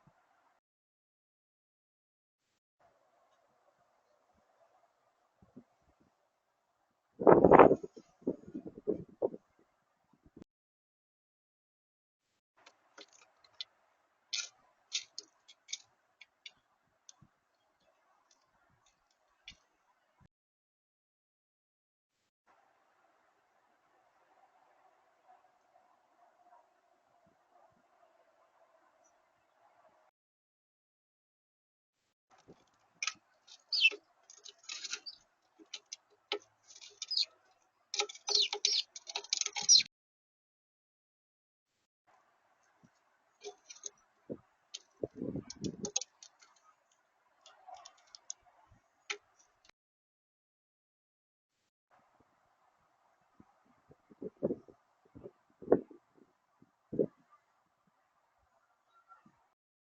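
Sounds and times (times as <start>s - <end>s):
small birds chirping: 33.0s - 37.4s, 38.0s - 39.9s.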